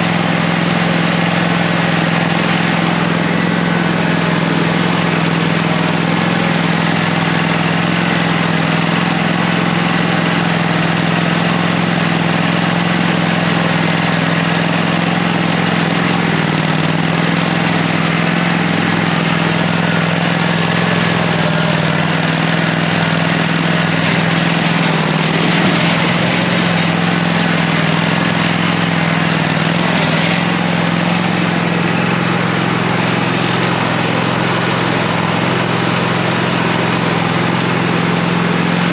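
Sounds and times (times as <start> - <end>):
small engine running: 0.0 - 38.9.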